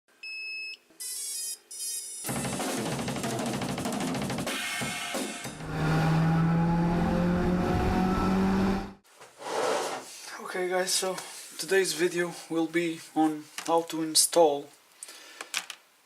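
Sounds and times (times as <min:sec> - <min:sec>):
drum kit and cymbals music: 0:02.3 - 0:05.6.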